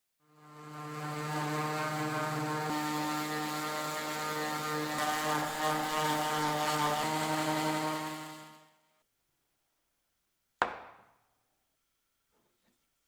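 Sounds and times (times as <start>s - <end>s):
power tool motor humming: 0.3s - 8.7s.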